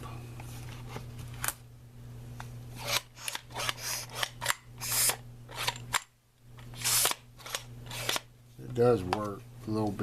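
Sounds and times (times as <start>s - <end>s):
hand pump hissing air: 6.8s - 8.2s.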